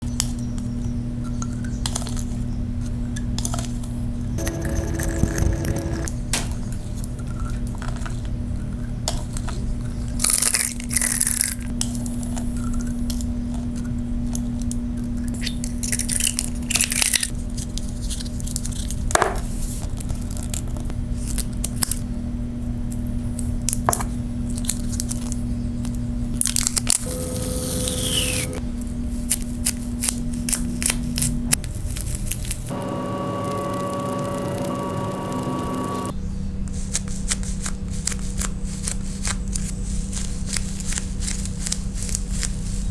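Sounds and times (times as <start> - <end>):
clicks: 4.4 - 6.1, 32.7 - 36.1
steady low hum: 4.4 - 6.1, 27.0 - 28.6, 32.7 - 36.1.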